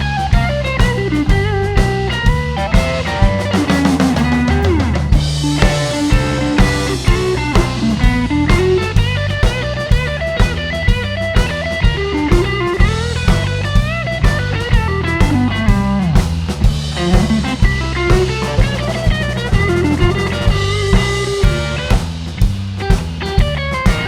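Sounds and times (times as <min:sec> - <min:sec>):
electric guitar bending notes: 0:00.0 - 0:22.3
bass line: 0:00.0 - 0:24.0
drum kit beat: 0:00.0 - 0:24.0.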